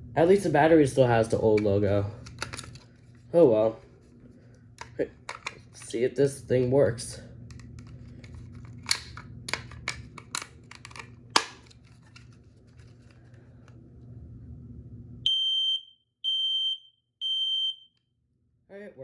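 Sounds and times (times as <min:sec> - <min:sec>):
plastic alarm handling clicks: 0:01.6 - 0:02.8, 0:04.8 - 0:05.9, 0:07.5 - 0:12.2
smoke alarm beeps: 0:15.2 - 0:18.0.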